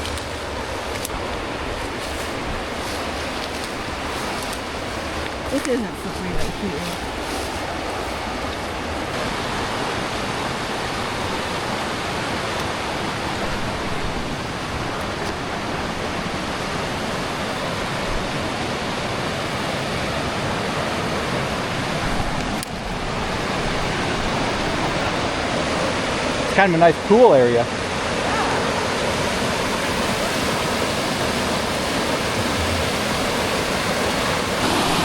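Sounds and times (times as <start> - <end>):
water rushing over rocks: 0.0 - 35.0.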